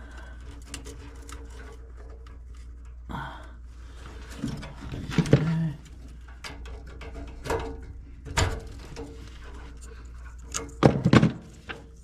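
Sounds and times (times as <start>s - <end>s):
wire connectors clicking: 4.4s - 10.9s
clatter of knocks: 10.5s - 11.8s.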